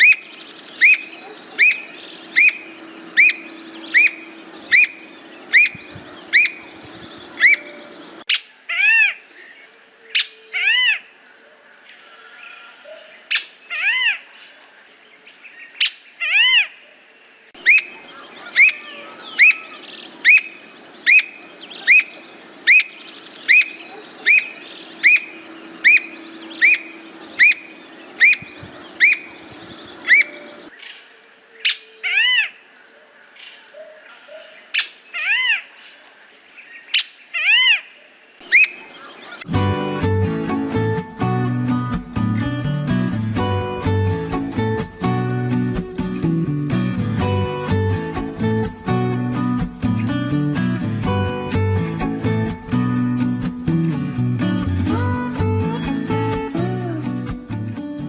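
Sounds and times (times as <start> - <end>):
bird whistled calls: 0.0 - 8.4, 17.6 - 30.7, 38.4 - 39.5.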